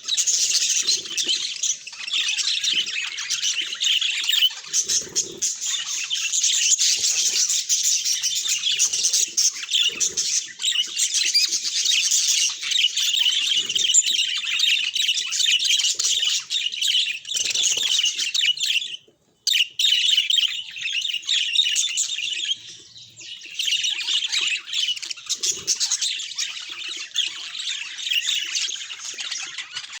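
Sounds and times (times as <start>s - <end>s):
budgerigars chattering: 0.0s - 30.0s.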